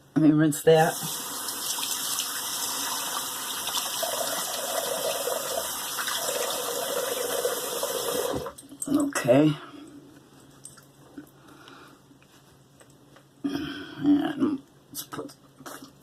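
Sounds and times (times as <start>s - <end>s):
tap water running into a sink: 0.9s - 8.5s.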